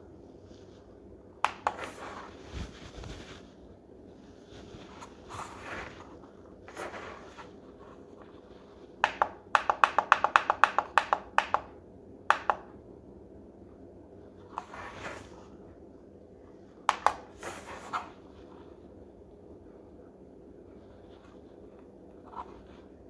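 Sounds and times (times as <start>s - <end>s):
handling rustles: 0.6s - 8.9s.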